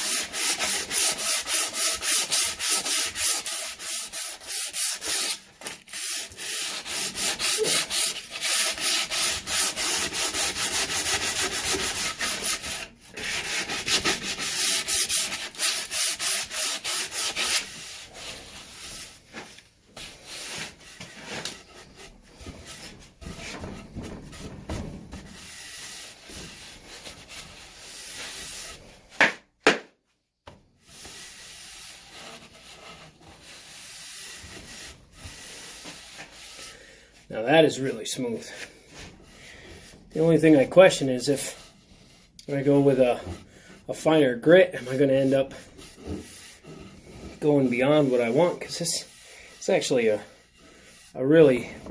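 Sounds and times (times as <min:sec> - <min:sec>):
sandpaper rubbing on wood: 0:00.0 - 0:19.2, 0:25.2 - 0:28.9, 0:30.8 - 0:36.7.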